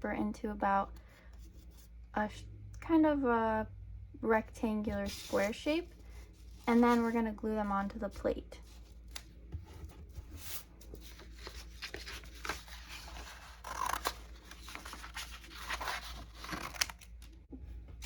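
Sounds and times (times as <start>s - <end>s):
paper rustling: 8.6s - 17.4s.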